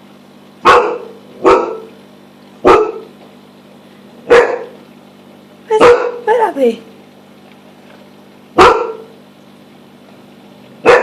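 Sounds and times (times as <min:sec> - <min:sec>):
dog barking: 0:00.6 - 0:01.9, 0:02.6 - 0:03.1, 0:04.2 - 0:04.8, 0:05.7 - 0:06.2, 0:08.6 - 0:09.1.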